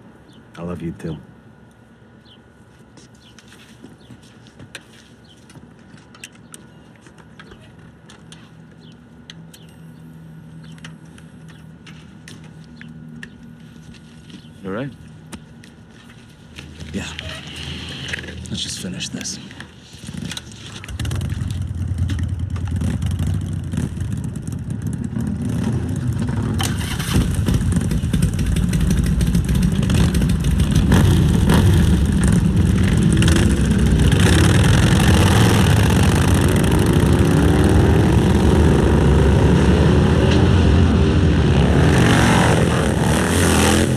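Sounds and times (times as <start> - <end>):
motorcycle engines revving: 16.8 - 43.9.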